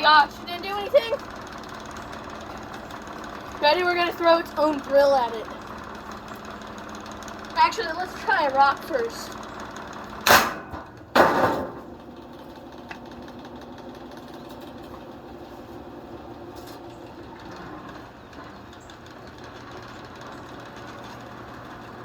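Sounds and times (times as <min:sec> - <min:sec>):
fan motor humming: 0:00.0 - 0:22.0
fan rattling: 0:00.0 - 0:22.0.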